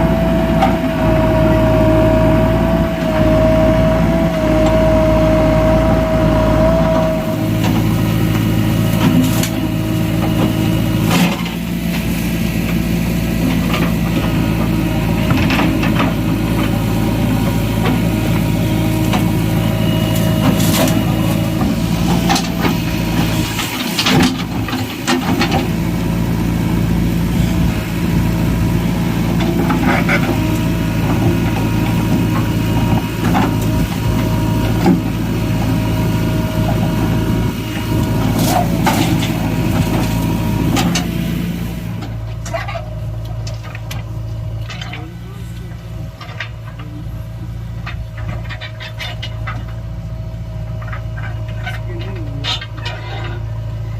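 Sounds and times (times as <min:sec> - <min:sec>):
diesel engine under load: 0:00.0 - 0:53.9
digging knocks and clanks: 0:06.9 - 0:26.0, 0:29.2 - 0:37.0, 0:37.7 - 0:41.2, 0:41.9 - 0:45.2, 0:45.8 - 0:53.5.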